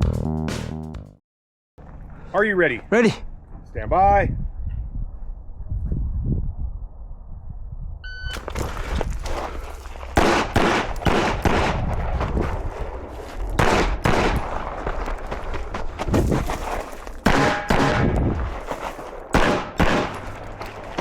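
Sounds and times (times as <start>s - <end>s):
shot timer beep: 8.0s - 8.4s
rapid gunshots: 10.2s - 11.8s, 13.6s - 14.7s, 17.2s - 18.1s, 19.3s - 20.3s.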